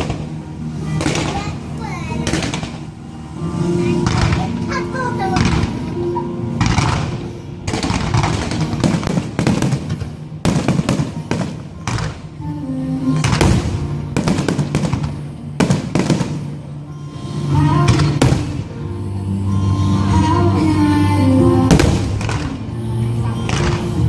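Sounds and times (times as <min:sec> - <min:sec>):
fireworks bangs: 0:00.0 - 0:12.4, 0:13.0 - 0:16.7, 0:17.6 - 0:18.8, 0:21.7 - 0:22.7
music: 0:00.0 - 0:24.0.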